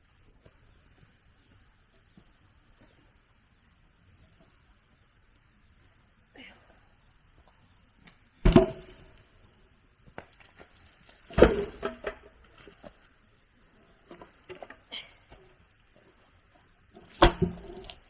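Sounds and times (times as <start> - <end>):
tool striking wood heavily: 8.5 - 9.0.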